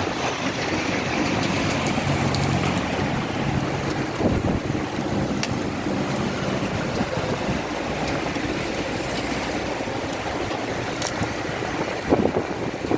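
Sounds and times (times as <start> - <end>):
heavy rain in wind: 0.0 - 12.9
sharp ticks: 11.0 - 11.3.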